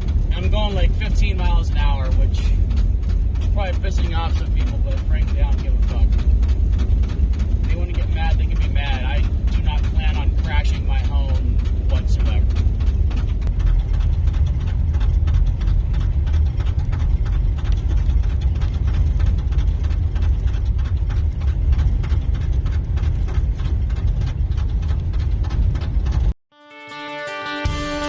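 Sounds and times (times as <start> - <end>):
snow chains clacking on road: 0.0 - 26.2
road and engine rumble: 0.0 - 26.4.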